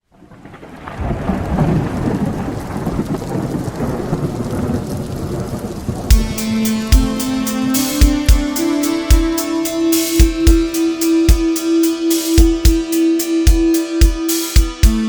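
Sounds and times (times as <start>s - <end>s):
rain falling: 0.0s - 10.4s
low rolling thunder: 0.1s - 6.3s
music with heavy drum hit: 6.1s - 15.0s.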